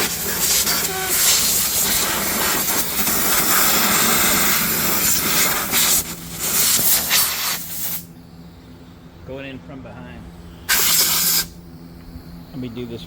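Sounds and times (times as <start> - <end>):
compressed air blow gun hissing: 0.0 - 8.4, 10.6 - 11.8.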